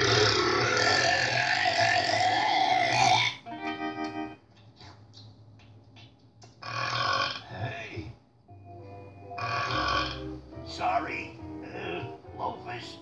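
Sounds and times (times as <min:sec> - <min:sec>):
long loud burp: 0:00.0 - 0:03.4, 0:06.6 - 0:07.5, 0:09.4 - 0:10.2.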